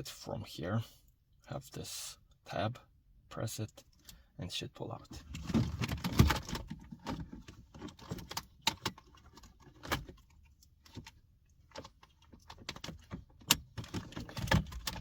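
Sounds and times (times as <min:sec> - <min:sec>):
plastic car trim clicking and rattling: 0:05.2 - 0:15.0.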